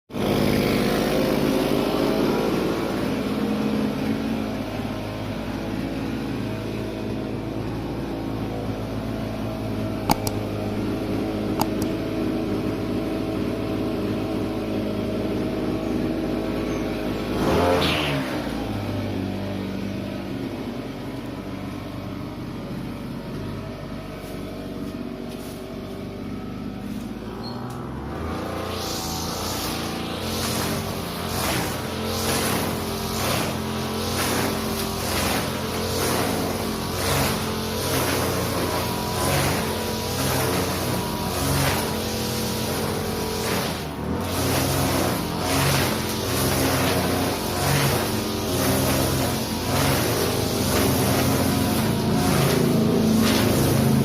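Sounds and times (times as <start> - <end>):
brush cutter cutting grass: 0.1 - 54.0.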